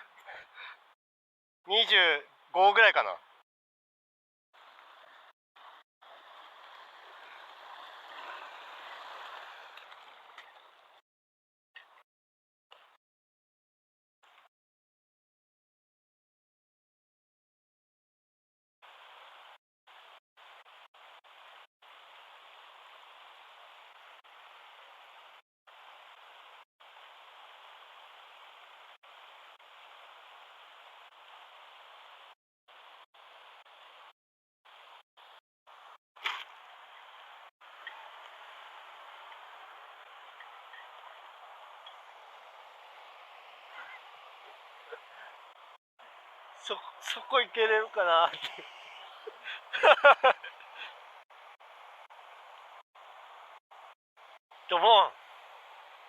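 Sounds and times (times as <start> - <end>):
mountain stream flowing: 4.6 - 11.0, 18.8 - 34.1, 34.7 - 56.0.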